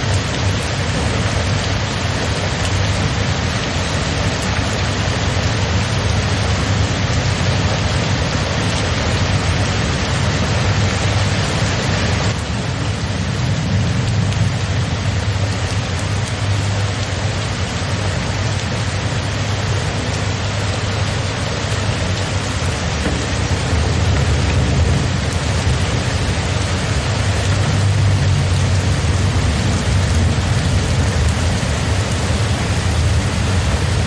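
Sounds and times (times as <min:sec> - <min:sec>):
steady rain falling: 0:00.0 - 0:34.0
deep low rumble: 0:22.4 - 0:34.0.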